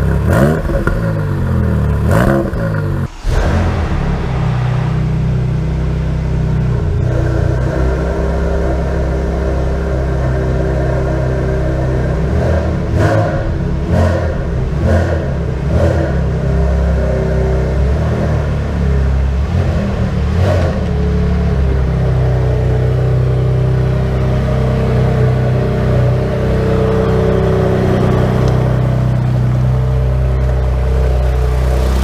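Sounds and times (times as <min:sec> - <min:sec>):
car engine running hard: 0:00.0 - 0:32.0
exhaust bursts: 0:03.0 - 0:16.6.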